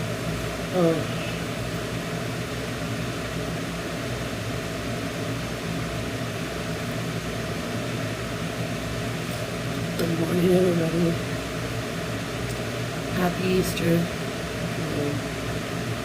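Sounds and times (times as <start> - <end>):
low machine hum: 0.0 - 16.0.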